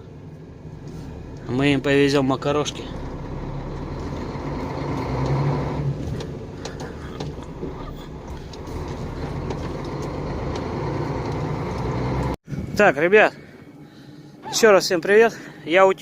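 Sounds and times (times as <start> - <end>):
truck diesel engine droning: 0.0 - 12.7.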